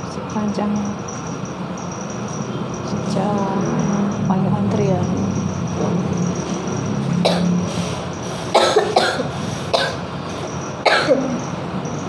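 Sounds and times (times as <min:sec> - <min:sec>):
steady background hum: 0:00.0 - 0:12.0
person coughing: 0:07.3 - 0:07.6, 0:08.5 - 0:10.0, 0:10.8 - 0:11.4.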